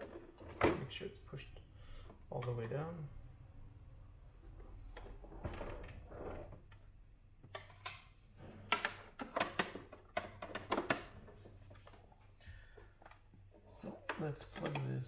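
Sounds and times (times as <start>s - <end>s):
hard plastic parts clicking: 7.4s - 15.0s.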